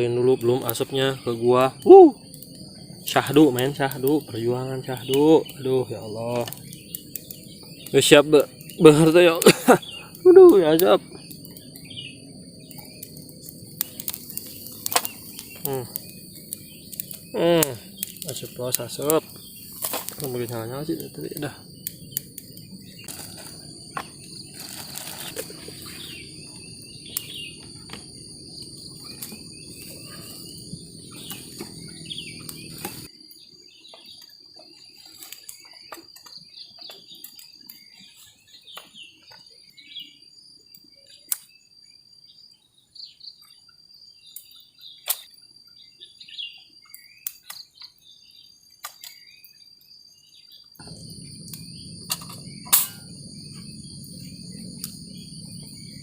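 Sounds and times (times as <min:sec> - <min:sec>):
wood fire crackling: 0:00.0 - 0:39.2, 0:50.8 - 0:56.0
night insects trilling: 0:00.0 - 0:56.0
low rumble: 0:50.8 - 0:56.0.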